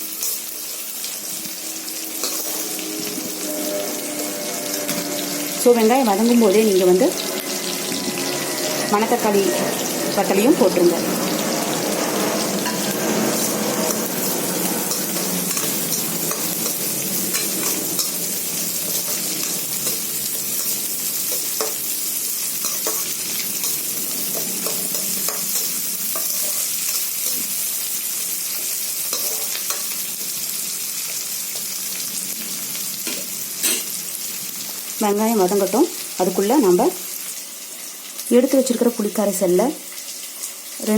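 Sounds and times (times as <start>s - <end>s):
food sizzling in oil: 0.0s - 40.9s
spoon stirring in a pan: 18.9s - 27.7s, 29.0s - 30.0s.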